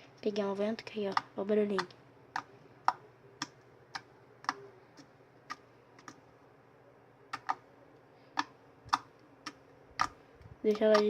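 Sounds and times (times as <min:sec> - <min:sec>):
slime clicking and popping: 0:07.3 - 0:07.6.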